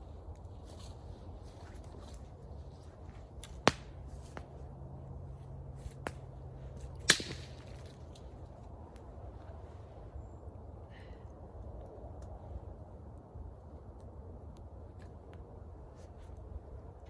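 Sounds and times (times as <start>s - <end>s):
campfire wood cracking: 3.4s - 4.5s, 5.9s - 9.1s
faint fire clicks: 11.5s - 15.6s.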